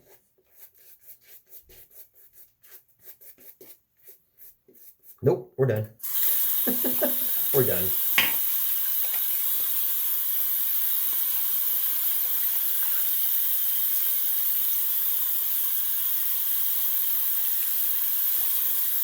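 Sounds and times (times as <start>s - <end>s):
tap water running into sink: 6.0s - 19.0s.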